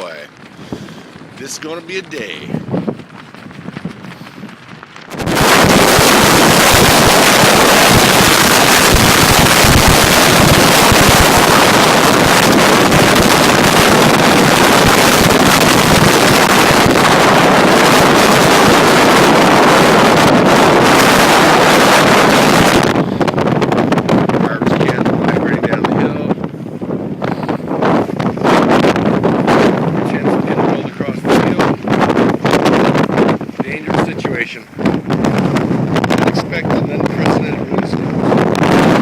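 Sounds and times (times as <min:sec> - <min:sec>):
strong wind into microphone: 0:00.0 - 0:39.0.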